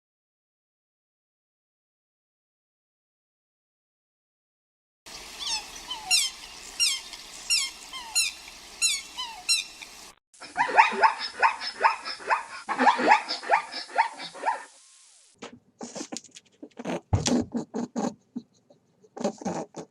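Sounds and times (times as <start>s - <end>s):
high squeaky animal calls: 5.3s - 14.7s.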